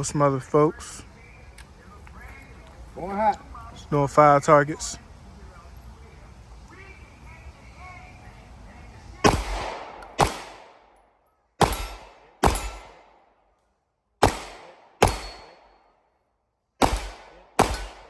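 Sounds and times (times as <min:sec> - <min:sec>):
gunshots with long echo: 0:09.2 - 0:11.0, 0:11.6 - 0:13.3, 0:14.2 - 0:15.8, 0:16.8 - 0:18.0.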